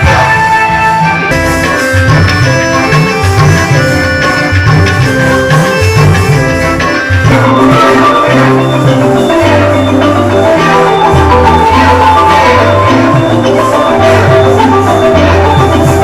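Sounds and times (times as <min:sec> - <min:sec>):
music with drums and bass: 0:00.0 - 0:16.0.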